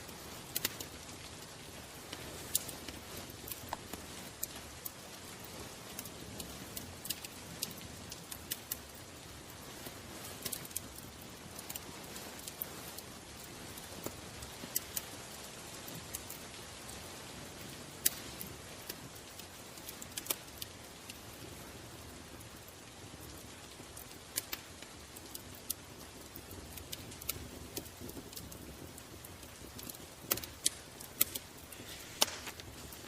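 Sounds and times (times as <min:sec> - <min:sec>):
sharp crackles and pops: 0:00.0 - 0:33.0
steady hiss: 0:00.0 - 0:33.0.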